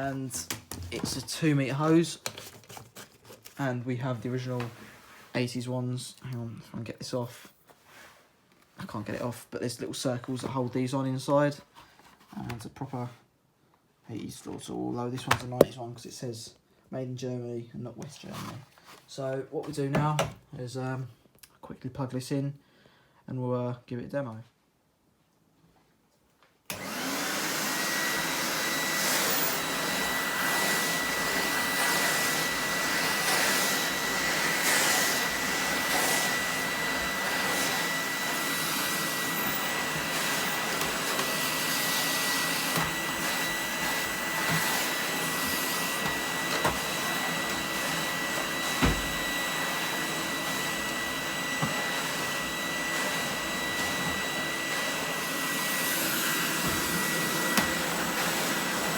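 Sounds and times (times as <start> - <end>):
vacuum cleaner running: 26.7 - 58.9
short thump: 48.8 - 49.2.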